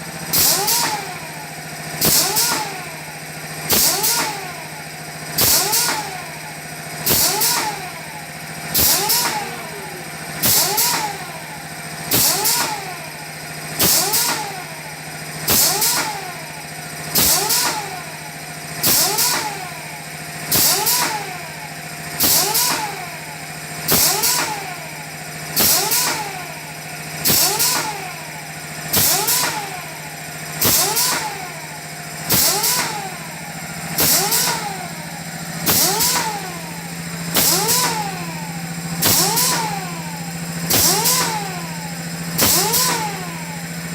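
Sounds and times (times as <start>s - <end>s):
filling machine hiss: 0.2s - 1.1s, 2.0s - 2.7s, 7.0s - 7.7s, 8.7s - 12.8s, 15.4s - 16.1s, 20.5s - 21.2s, 22.2s - 22.8s, 23.8s - 43.9s
rising and falling whine: 8.9s - 11.6s.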